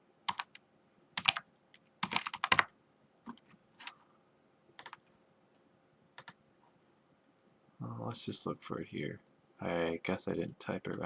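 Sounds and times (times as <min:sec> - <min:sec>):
typing on a computer keyboard: 0:00.3 - 0:00.6, 0:01.2 - 0:02.7, 0:04.8 - 0:05.1, 0:06.2 - 0:06.4.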